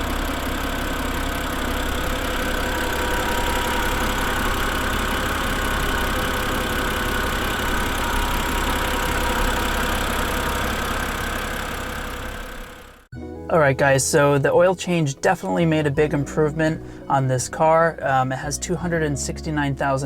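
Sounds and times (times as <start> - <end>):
car engine idling: 0.0 - 20.0.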